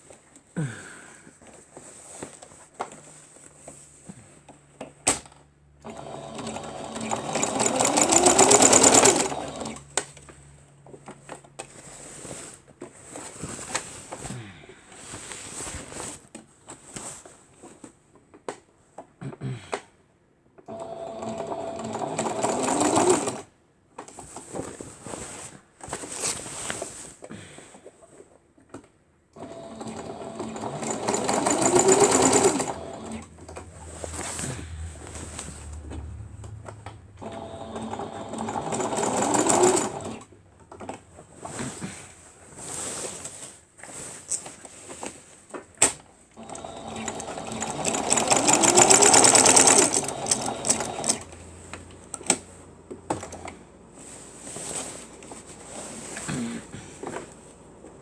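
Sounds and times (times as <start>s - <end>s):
sewing machine stitching: 5.8s - 10.0s, 20.7s - 23.5s, 29.4s - 34.3s, 37.2s - 41.0s, 46.4s - 51.4s.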